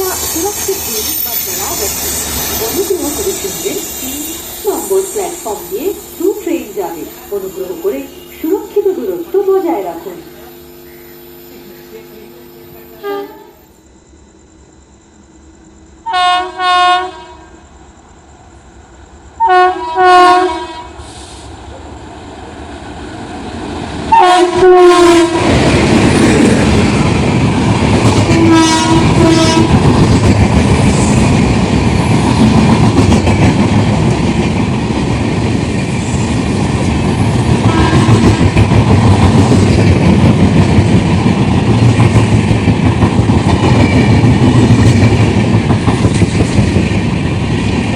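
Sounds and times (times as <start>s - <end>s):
locomotive horn blasts: 9.8s - 13.8s, 16.0s - 17.5s, 19.4s - 21.0s, 24.1s - 25.4s, 28.3s - 29.8s, 37.7s - 38.3s
train wheels clattering: 25.3s - 47.9s.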